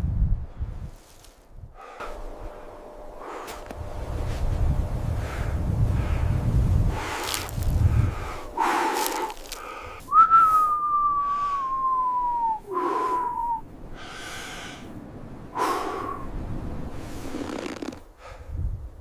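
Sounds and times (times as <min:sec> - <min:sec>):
heavy breathing: 0:01.7 - 0:11.8, 0:12.7 - 0:16.3
whistling tone sliding down: 0:10.1 - 0:13.6.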